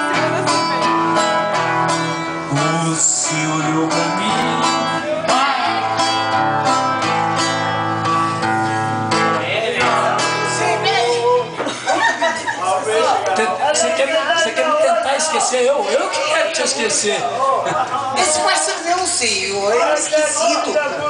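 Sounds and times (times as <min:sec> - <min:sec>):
strummed acoustic guitar: 0:00.0 - 0:11.9
person singing: 0:02.5 - 0:06.1.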